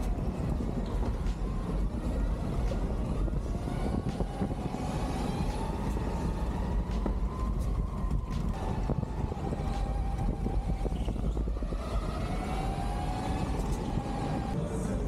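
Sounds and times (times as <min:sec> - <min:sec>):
go-kart motor whining: 0:00.0 - 0:14.6
low rumble: 0:00.0 - 0:15.0.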